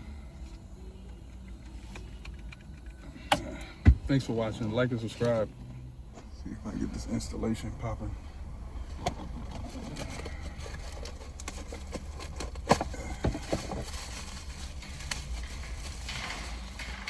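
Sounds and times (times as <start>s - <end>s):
parts clicking and knocking: 14.7s - 17.0s.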